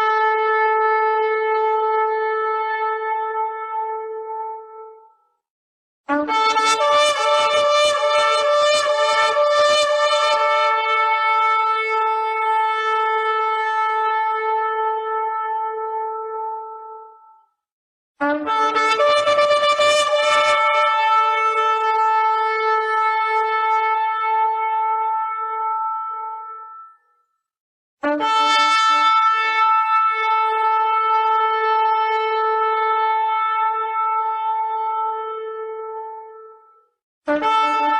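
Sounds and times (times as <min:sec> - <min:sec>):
shofar blasts: 0:06.1 - 0:16.6, 0:18.2 - 0:27.0, 0:28.0 - 0:36.7, 0:37.3 - 0:37.9.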